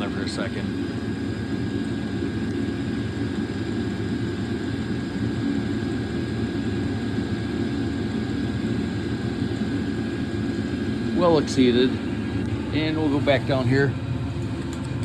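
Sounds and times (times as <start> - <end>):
air heater roaring: 0.0 - 15.0
high whine: 8.4 - 15.0.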